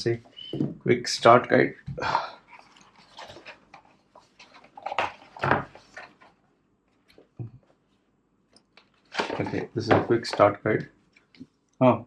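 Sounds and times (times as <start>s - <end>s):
cardboard and paper rustling: 2.5s - 6.4s, 8.9s - 10.5s.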